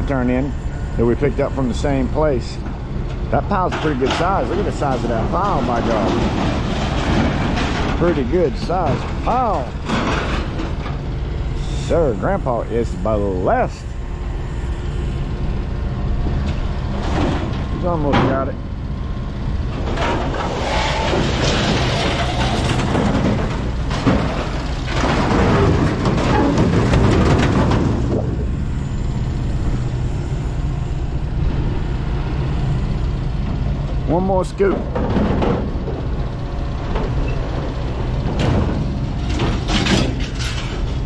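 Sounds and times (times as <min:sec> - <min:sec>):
diesel engine rumble: 0:00.0 - 0:41.0
metal clanks: 0:03.5 - 0:11.0, 0:38.2 - 0:41.0
scrap metal clattering: 0:03.6 - 0:11.0, 0:19.7 - 0:28.4, 0:38.2 - 0:41.0
metal scraping: 0:19.7 - 0:28.8.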